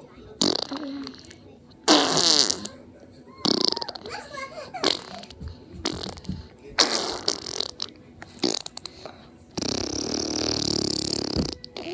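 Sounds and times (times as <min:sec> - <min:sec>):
fart sounds: 0:00.4 - 0:02.8, 0:03.4 - 0:04.1, 0:04.8 - 0:08.9, 0:09.6 - 0:11.9.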